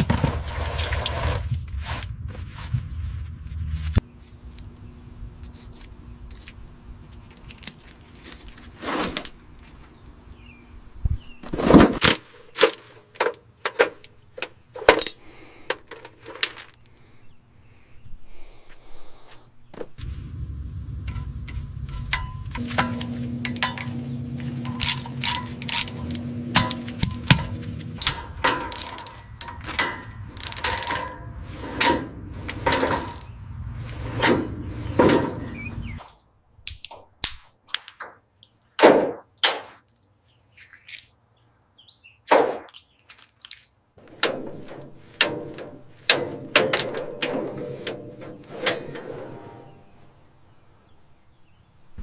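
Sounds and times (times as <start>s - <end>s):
steady machine hum: 20.0s - 35.9s
metallic clanks and knocks: 21.0s - 33.4s, 34.1s - 36.0s, 44.0s - 50.2s.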